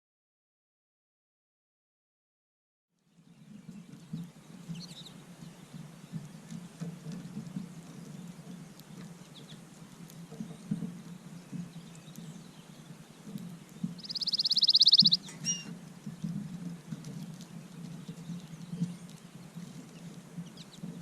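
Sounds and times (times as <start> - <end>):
songbird trill: 3.0 - 16.4, 17.1 - 21.0
high bird call notes: 14.0 - 15.7.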